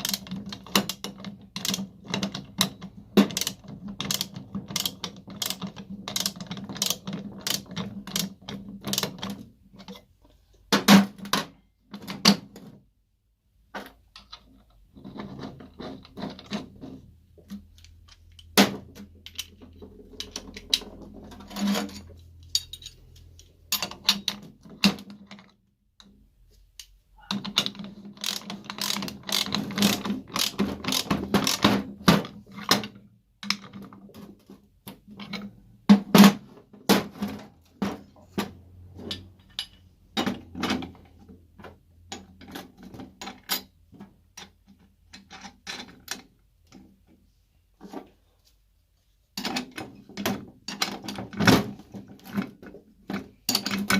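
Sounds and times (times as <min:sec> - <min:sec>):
metal winch parts clicking: 0:00.0 - 0:09.2, 0:19.2 - 0:25.2, 0:26.8 - 0:31.6.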